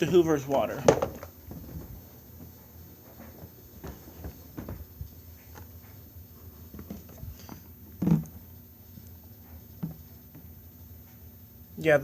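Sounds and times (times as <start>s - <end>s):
light knocks and handling: 0.0s - 8.4s.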